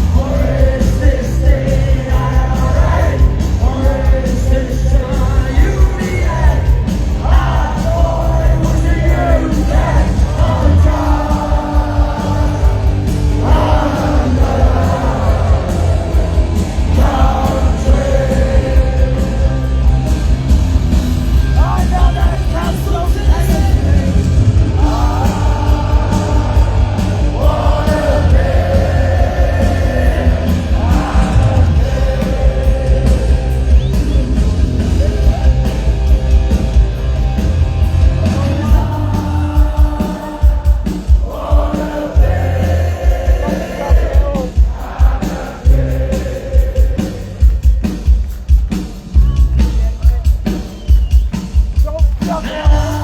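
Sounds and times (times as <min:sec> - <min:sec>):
punk rock band playing: 0:00.0 - 0:53.0.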